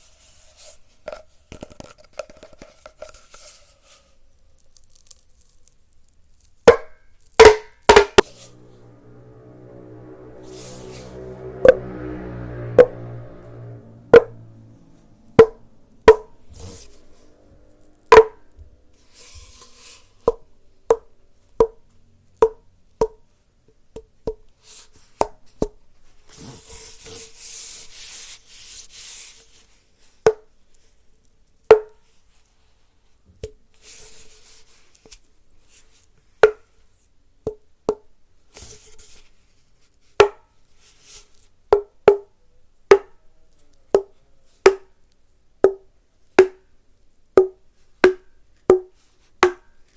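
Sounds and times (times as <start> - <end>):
sharp taps on hollow object: 18.1 - 18.4, 46.4 - 46.6, 47.4 - 49.7.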